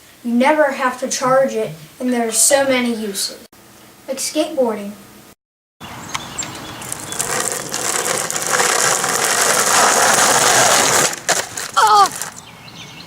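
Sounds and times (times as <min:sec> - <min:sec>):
skateboard wheels rolling on pavement: 0:05.8 - 0:12.9.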